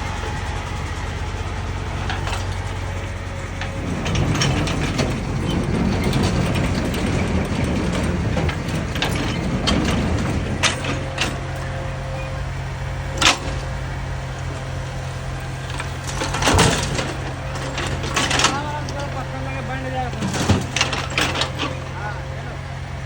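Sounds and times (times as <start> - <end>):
diesel engine running: 0.0 - 23.0
metallic clanks and rattles: 0.2 - 23.0.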